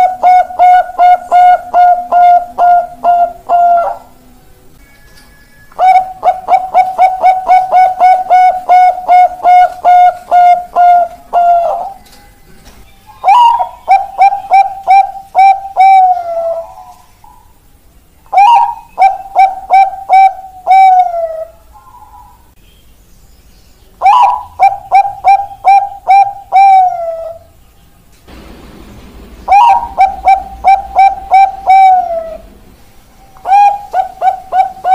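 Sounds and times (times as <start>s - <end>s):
dove cooing: 0.0s - 4.2s, 5.8s - 12.1s, 13.2s - 17.6s, 18.3s - 22.5s, 24.0s - 27.6s, 29.4s - 32.6s, 33.4s - 34.9s.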